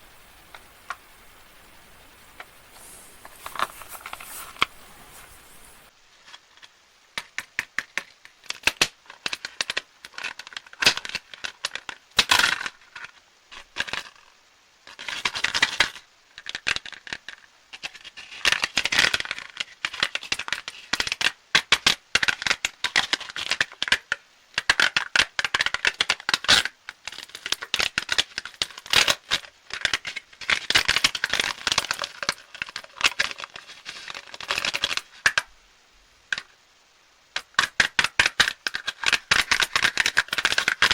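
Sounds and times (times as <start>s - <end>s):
candy wrappers crinkling: 2.7s - 5.9s.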